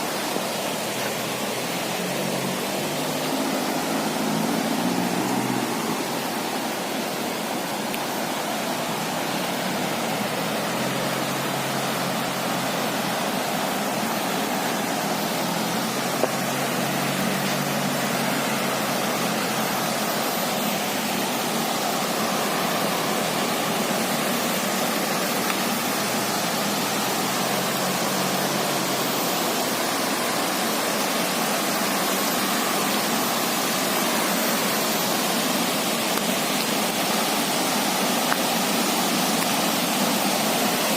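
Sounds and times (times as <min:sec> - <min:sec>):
stream water rushing: 0:00.0 - 0:40.9.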